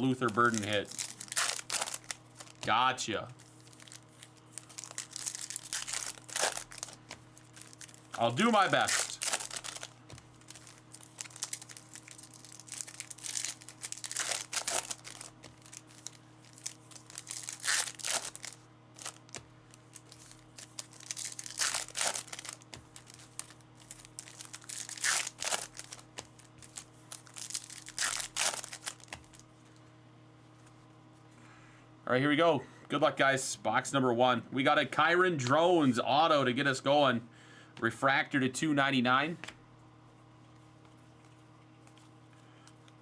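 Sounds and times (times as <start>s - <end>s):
plastic wrapping crinkling and tearing: 0.0s - 2.7s, 3.4s - 29.5s
steady low hum: 0.0s - 43.0s.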